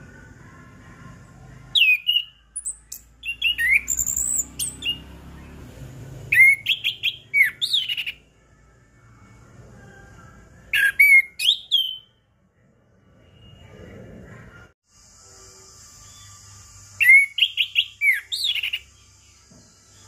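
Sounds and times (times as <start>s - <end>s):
thrush whistled song: 1.7s - 5.7s, 6.3s - 8.2s, 10.7s - 12.2s, 16.0s - 20.0s.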